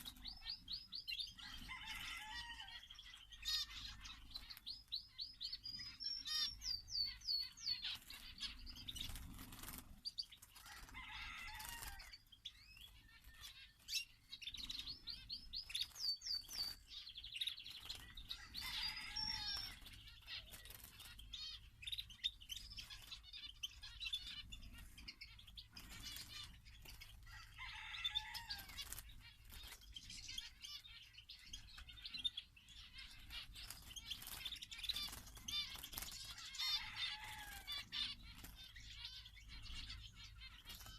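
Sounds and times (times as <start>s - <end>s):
small songbirds chirping: 0.0s - 40.9s
wings fluttering: 7.4s - 12.2s, 17.6s - 21.7s, 25.7s - 30.8s, 32.9s - 40.9s.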